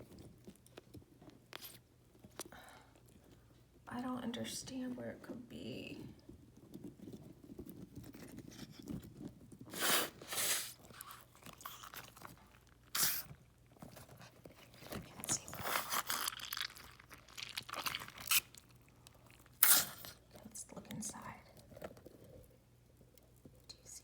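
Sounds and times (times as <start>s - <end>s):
hands crunching plush toy filling: 6.4s - 20.3s.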